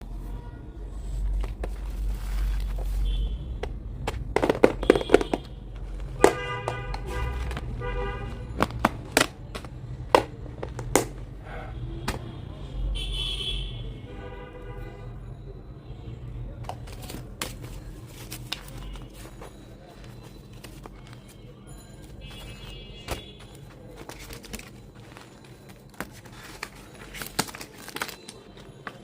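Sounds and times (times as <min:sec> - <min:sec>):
packaging clicks and rustles: 0:01.2 - 0:11.4, 0:16.6 - 0:29.0.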